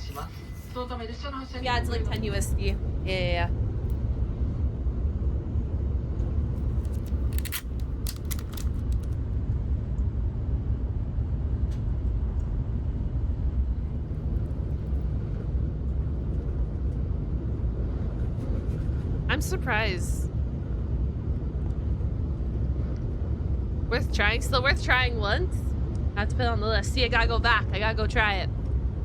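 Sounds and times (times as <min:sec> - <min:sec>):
steady low rumble: 0:00.0 - 0:29.0.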